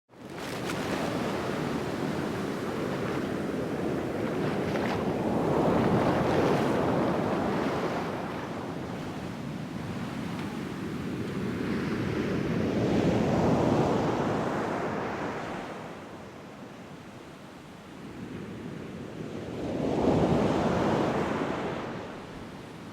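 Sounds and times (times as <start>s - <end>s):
sea waves breaking on shore: 0.1s - 16.6s
wind on microphone: 0.1s - 16.7s.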